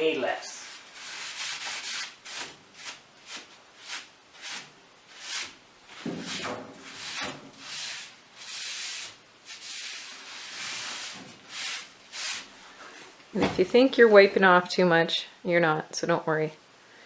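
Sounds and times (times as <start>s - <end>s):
paper towel wiping stove top: 0.4s - 12.6s.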